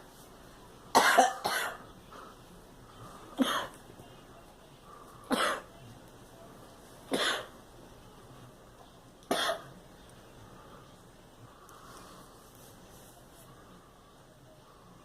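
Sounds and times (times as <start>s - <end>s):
girl coughing: 0.9s - 1.8s, 5.3s - 5.7s, 7.1s - 7.5s, 9.3s - 9.7s.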